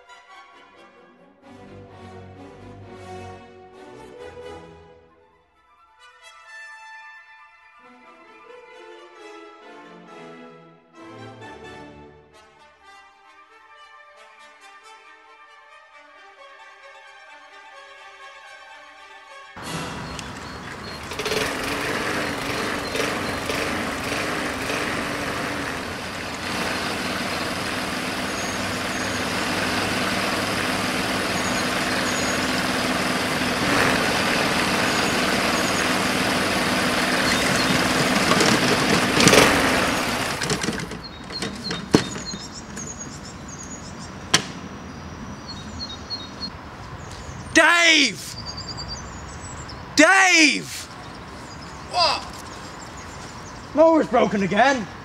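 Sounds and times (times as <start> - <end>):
lawnmower engine running: 19.6 - 46.5.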